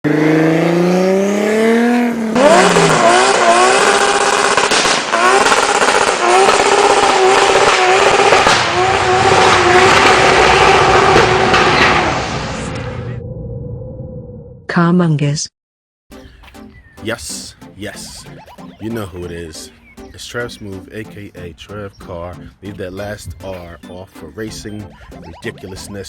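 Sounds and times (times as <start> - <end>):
car engines revving: 0.1 - 12.9.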